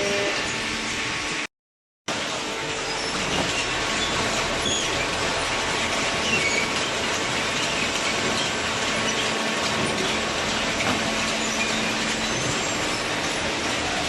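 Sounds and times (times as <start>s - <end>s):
clattering industrial machine: 2.1s - 14.0s
high metallic squeals: 2.6s - 5.2s, 6.1s - 9.4s, 11.2s - 13.4s.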